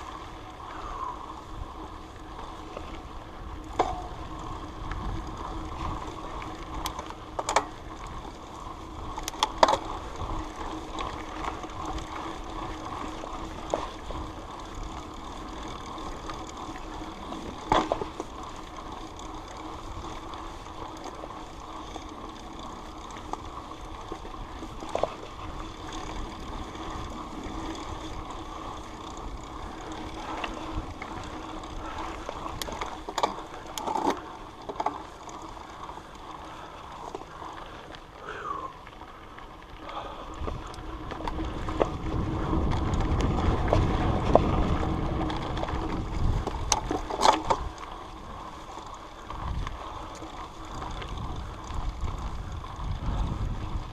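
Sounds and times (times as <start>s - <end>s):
bike tyre and drivetrain noise: 0.0s - 53.9s
bike knocks and rattles: 3.5s - 5.0s, 6.8s - 7.9s, 16.9s - 19.6s, 40.5s - 47.7s.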